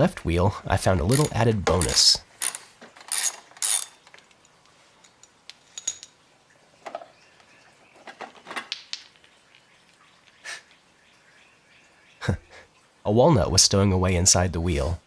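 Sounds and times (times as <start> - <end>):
hands handling plastic wheel: 0.9 - 6.1.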